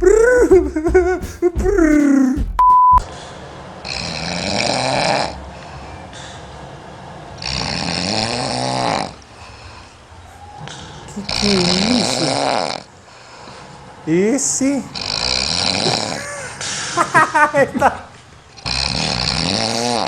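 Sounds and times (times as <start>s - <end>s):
short beep: 2.6s - 3.1s
long noisy snores: 3.1s - 14.0s, 14.8s - 17.0s, 18.6s - 20.0s
squeaky chirping snoring: 3.8s - 5.4s, 7.4s - 9.8s, 10.4s - 12.9s, 14.9s - 16.2s, 18.6s - 20.0s.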